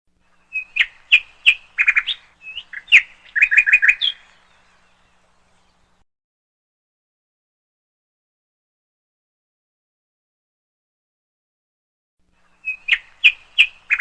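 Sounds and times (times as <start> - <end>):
bird chirping and trilling: 0.3 - 6.0, 12.5 - 14.0.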